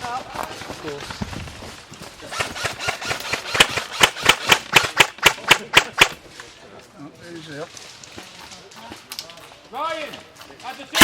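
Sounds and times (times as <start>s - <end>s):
airsoft gun shots: 2.3s - 6.2s.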